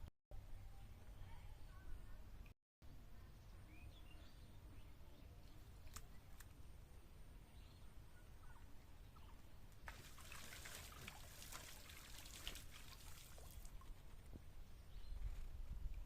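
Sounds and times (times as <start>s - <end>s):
water trickling and splashing: 9.2s - 14.3s.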